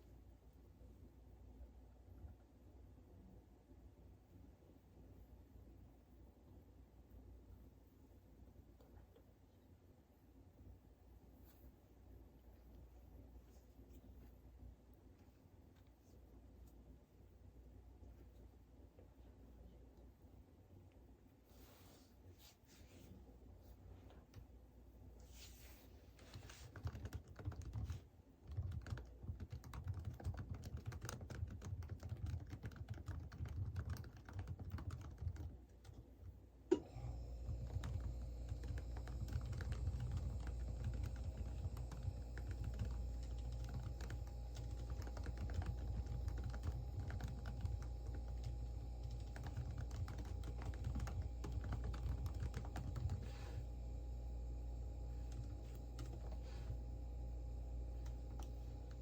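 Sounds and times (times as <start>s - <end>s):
steady hum with faint tones: 0.0s - 59.0s
computer keyboard typing: 26.3s - 36.0s, 37.4s - 53.6s, 55.2s - 56.4s, 58.0s - 59.0s.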